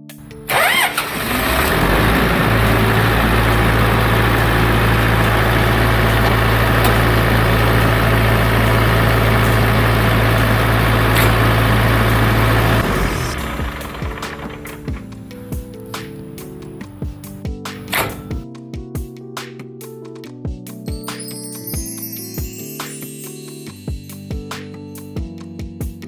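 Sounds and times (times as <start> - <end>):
fire pump engine running: 0.2 - 15.0, 17.8 - 18.3.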